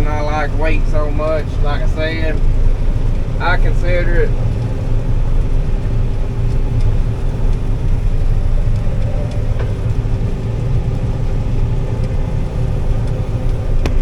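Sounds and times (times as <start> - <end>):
combine harvester engine drone: 0.0 - 14.0
steady hum: 0.0 - 14.0.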